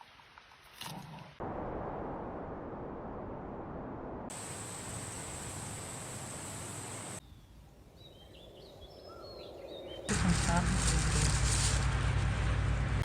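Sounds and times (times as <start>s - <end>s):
steady background hiss: 4.3s - 8.0s.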